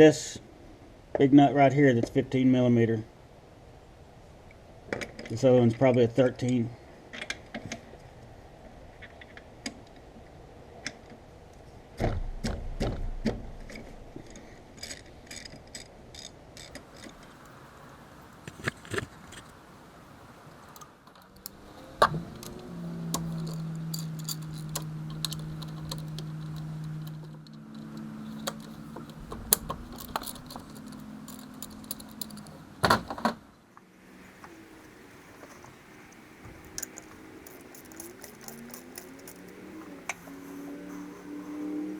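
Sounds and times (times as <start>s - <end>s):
low hum: 19.5s - 40.6s
metal tools clinking: 20.6s - 32.8s, 35.3s - 40.6s
tools clattering: 20.6s - 33.4s, 35.3s - 40.2s.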